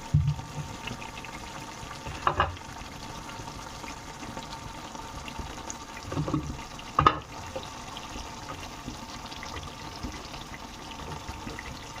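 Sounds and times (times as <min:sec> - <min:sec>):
gravy sizzling in a pan: 0:00.0 - 0:12.0.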